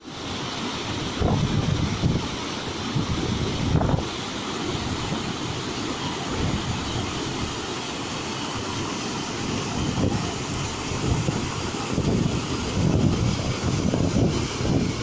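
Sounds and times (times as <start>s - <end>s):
small waterfall rushing: 0.0s - 15.0s.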